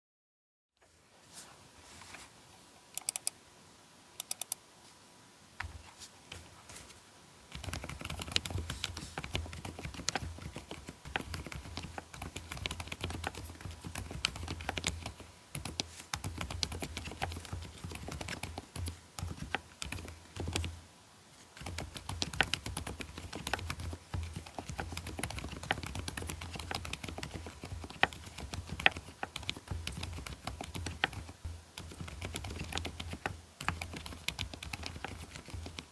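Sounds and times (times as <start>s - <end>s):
typing on mechanical keyboard: 3.0s - 3.3s, 7.5s - 20.7s, 21.6s - 35.9s.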